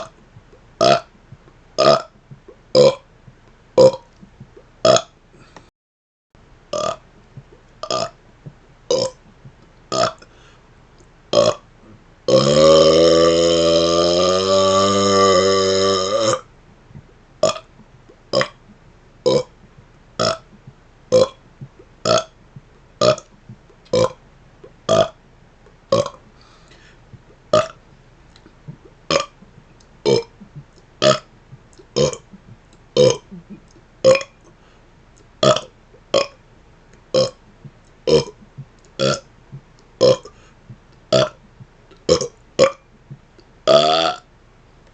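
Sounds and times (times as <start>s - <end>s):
man burping: 2.8s - 3.0s, 11.3s - 11.6s, 12.3s - 16.4s, 19.3s - 19.5s, 21.1s - 21.4s, 25.9s - 26.2s, 29.1s - 29.4s, 30.0s - 30.3s, 32.0s - 32.2s, 33.0s - 34.3s, 38.1s - 38.4s, 40.0s - 40.4s, 43.7s - 44.2s.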